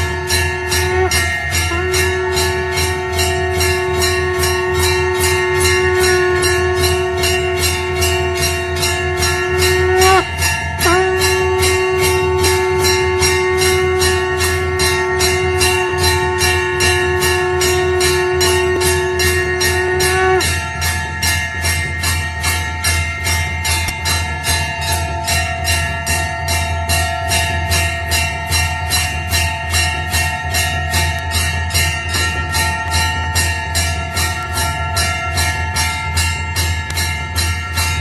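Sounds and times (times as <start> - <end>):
long held pitched tone: 0.0 - 25.6
temple bells ringing rapidly: 0.0 - 38.0.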